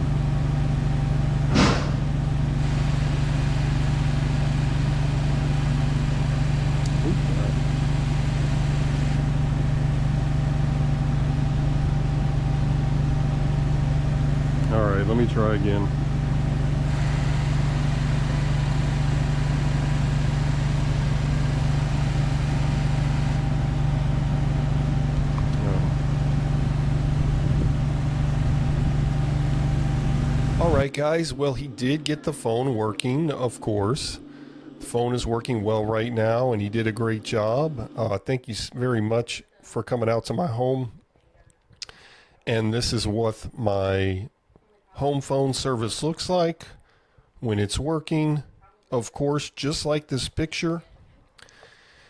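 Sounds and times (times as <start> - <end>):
vehicle engine idling: 0.0 - 38.4
brief rushing noise: 1.5 - 2.2.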